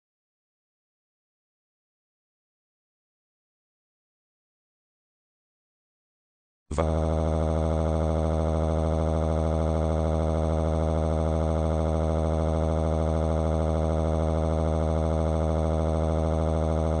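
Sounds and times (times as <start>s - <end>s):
buzzing electronic tone: 6.7s - 17.0s.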